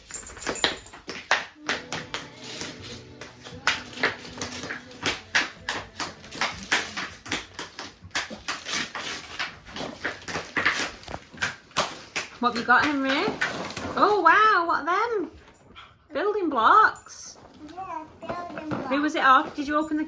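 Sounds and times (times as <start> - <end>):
wrapping paper tearing and crinkling: 2.1 - 12.3, 13.2 - 14.2.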